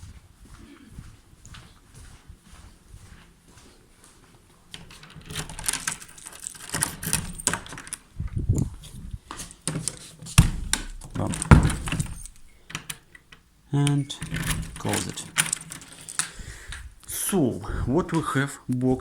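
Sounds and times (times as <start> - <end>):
keys jangling: 5.0 - 8.0, 10.8 - 12.5, 14.3 - 16.3
door lock clicking: 5.2 - 8.0, 10.4 - 13.0, 14.2 - 16.3
door thumps: 10.4 - 12.5, 14.2 - 15.0.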